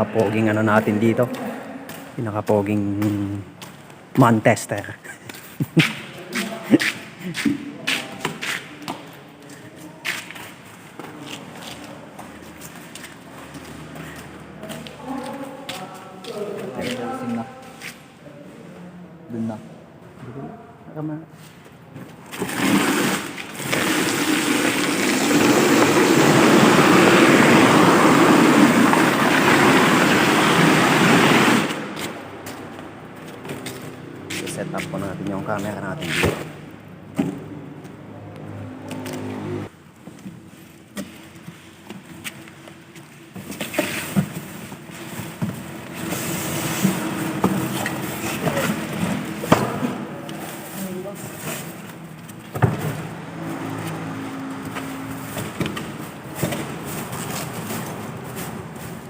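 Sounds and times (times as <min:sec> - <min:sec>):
diesel engine revving: 0:22.4 - 0:32.0, 0:38.1 - 0:39.7.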